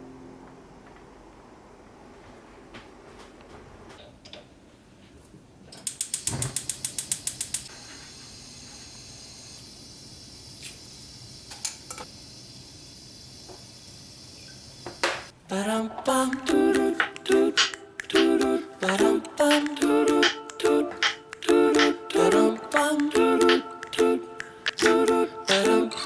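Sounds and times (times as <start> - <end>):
faint steady hiss: 4.3 - 26.0
mechanism ratcheting clicks: 5.8 - 7.7.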